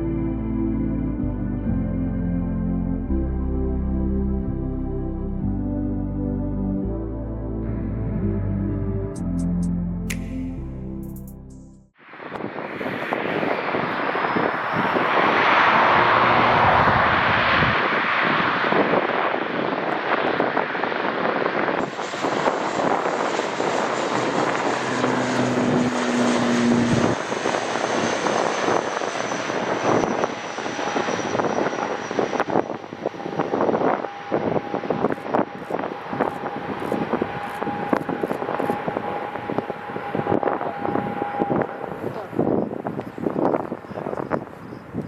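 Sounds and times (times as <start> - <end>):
airliner engines passing: 12.0 - 45.0
thin high whine: 21.8 - 44.2.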